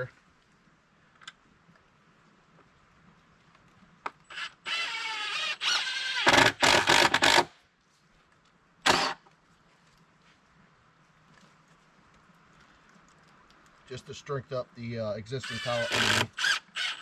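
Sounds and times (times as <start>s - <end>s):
cordless driver driving screws: 4.3s - 7.5s, 8.9s - 9.2s, 15.4s - 17.0s.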